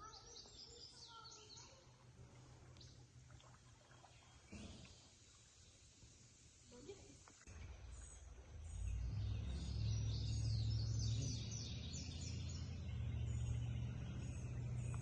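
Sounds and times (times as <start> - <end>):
bird chirping: 0.0 - 1.9, 7.5 - 15.0
steady low rumble: 7.5 - 15.0.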